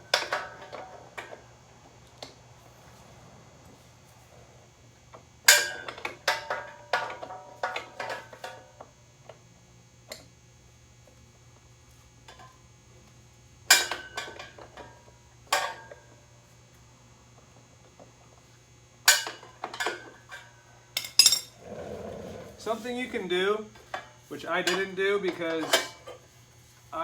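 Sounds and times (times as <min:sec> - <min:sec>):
metal hand tools clanking: 0:21.0 - 0:21.6.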